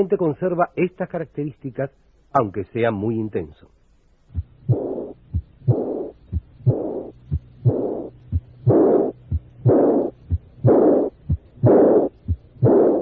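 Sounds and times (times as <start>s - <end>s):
heartbeat: 4.3s - 13.0s
high-pitched blowing heart murmur: 4.3s - 13.0s.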